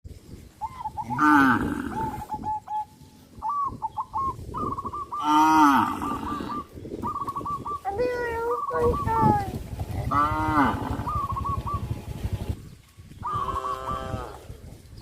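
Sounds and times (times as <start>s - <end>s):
cow mooing: 1.1s - 2.2s, 10.1s - 11.1s.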